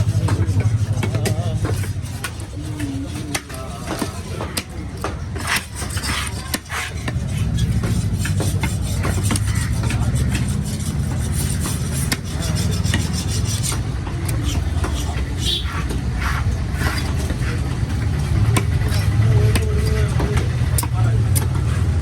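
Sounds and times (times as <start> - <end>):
knife chopping fish on board: 0.2 - 17.6.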